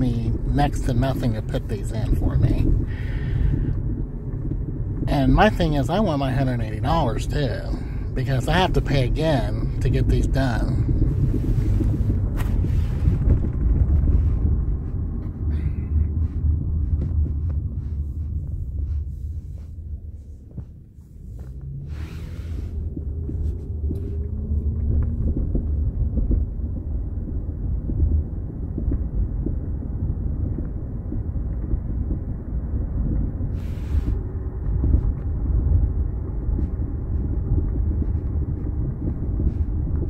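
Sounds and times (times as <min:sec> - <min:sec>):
road rumble: 0:00.0 - 0:40.0
car engine pulling away: 0:21.3 - 0:27.6.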